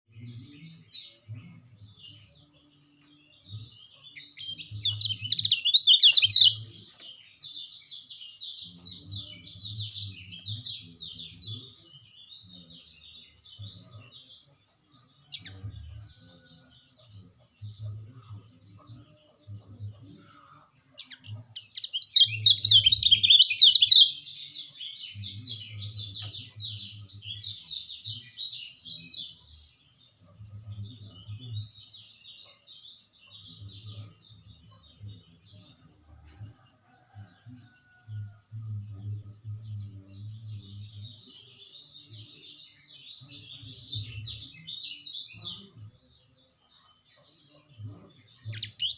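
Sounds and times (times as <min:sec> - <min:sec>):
bird twittering chatter: 0:04.4 - 0:06.6.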